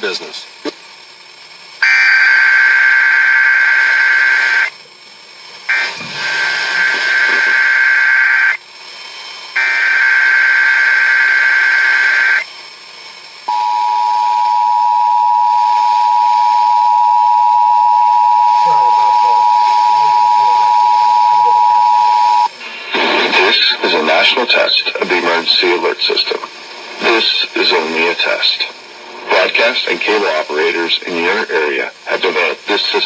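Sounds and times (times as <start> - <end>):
buzzing data tone squeals: 1.8 - 4.8, 5.7 - 8.6, 9.6 - 12.5, 13.5 - 22.5
two-tone attention signal: 13.5 - 22.5.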